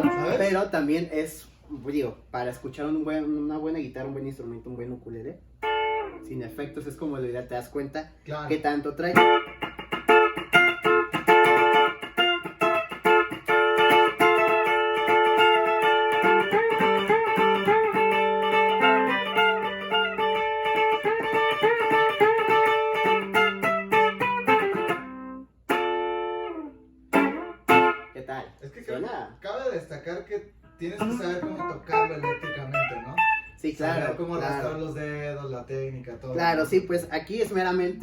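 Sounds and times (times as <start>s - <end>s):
electric ukulele picked notes: 0.0s - 0.4s, 9.2s - 28.1s, 31.0s - 33.5s.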